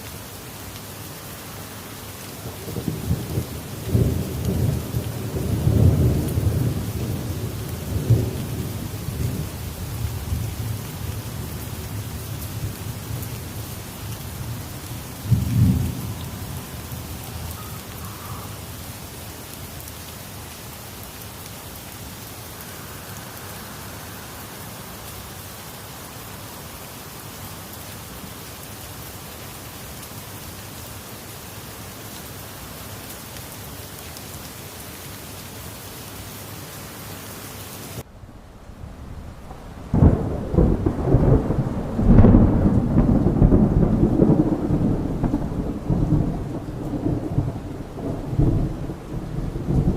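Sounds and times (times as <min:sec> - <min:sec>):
steady rain falling: 0:00.0 - 0:49.9
thunder rumbling: 0:02.4 - 0:13.3, 0:14.3 - 0:18.7, 0:38.0 - 0:49.9.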